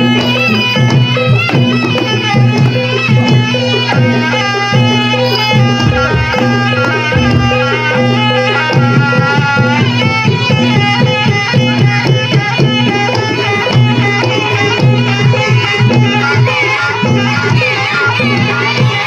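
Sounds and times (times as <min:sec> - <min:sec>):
hand drums beating: 0:00.0 - 0:19.0
struck metal gamelan tones: 0:00.0 - 0:19.0
wavering melody: 0:00.0 - 0:19.0.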